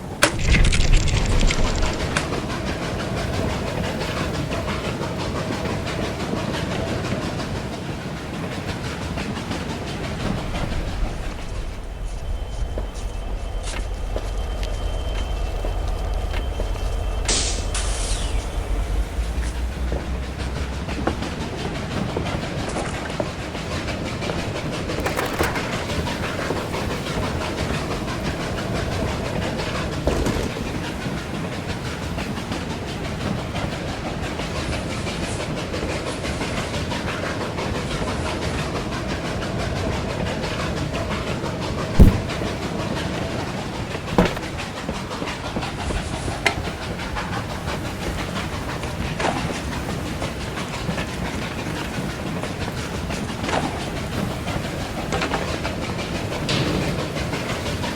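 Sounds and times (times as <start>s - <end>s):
train rumble and clatter: 0.0s - 57.9s
sharp knocks: 42.0s - 42.6s, 44.2s - 44.5s.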